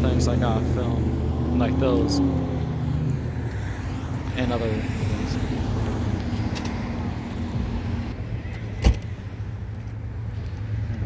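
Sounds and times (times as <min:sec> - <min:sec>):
vehicle engine rumbling: 0:00.0 - 0:11.0.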